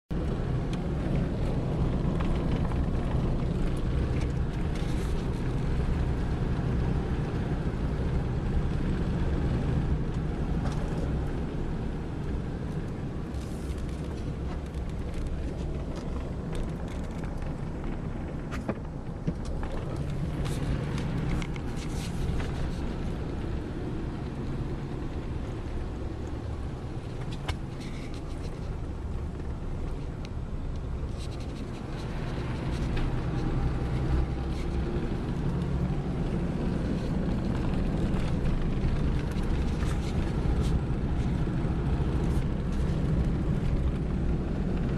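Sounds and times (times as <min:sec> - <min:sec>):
vehicle engine and road rumble: 0:00.0 - 0:44.9.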